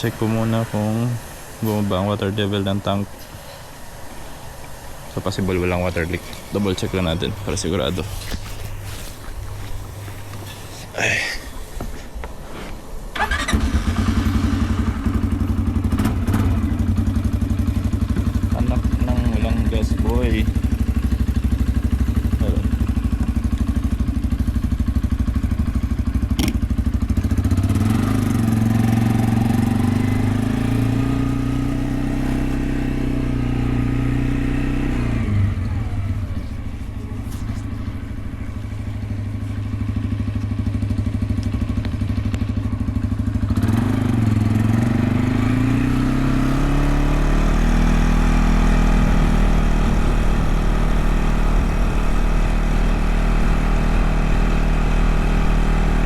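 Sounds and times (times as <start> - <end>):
small motorbike engine revving: 0.0 - 11.2, 13.2 - 56.0.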